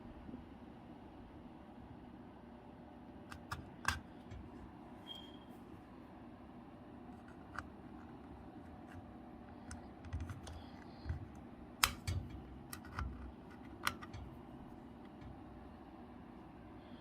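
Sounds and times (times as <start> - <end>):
clicks from handling a safe lock: 9.6 - 14.4.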